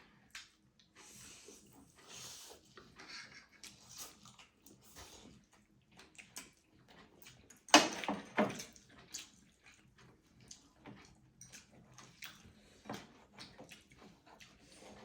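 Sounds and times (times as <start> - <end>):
wet chewing: 8.8 - 15.0.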